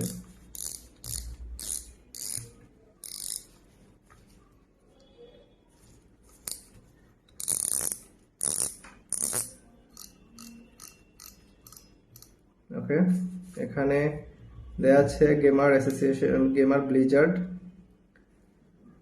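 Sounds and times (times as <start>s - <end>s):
spinning reel ratchet clicks: 0.0s - 3.5s, 7.4s - 12.3s.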